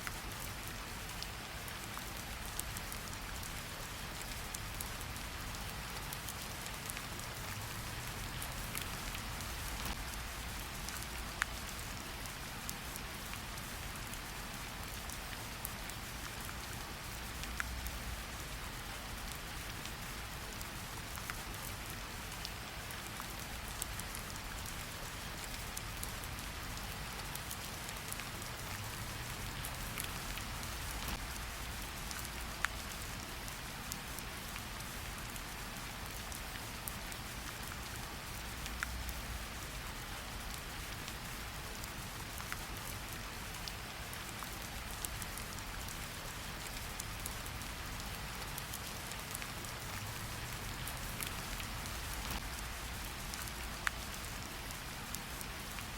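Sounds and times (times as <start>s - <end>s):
steady rain: 0.0s - 55.9s.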